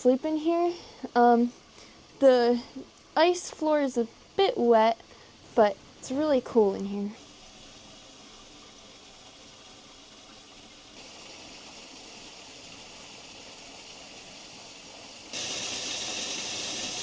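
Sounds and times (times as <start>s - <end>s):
waterfall rushing: 15.3s - 17.0s.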